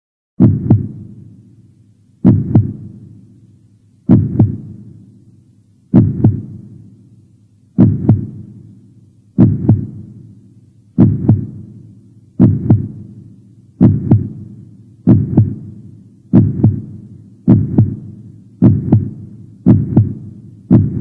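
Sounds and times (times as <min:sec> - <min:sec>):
heartbeat thumps: 0:00.4 - 0:01.1, 0:02.2 - 0:03.1, 0:04.1 - 0:04.9, 0:05.9 - 0:06.7, 0:07.8 - 0:08.6, 0:09.4 - 0:10.2, 0:11.0 - 0:11.8, 0:12.4 - 0:13.2, 0:13.8 - 0:21.0.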